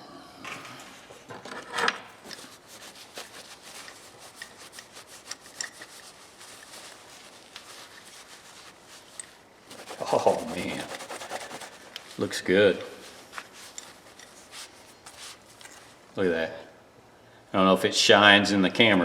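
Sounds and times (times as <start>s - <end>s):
cloth rubbing on metal tool: 2.3s - 12.4s, 13.0s - 16.1s.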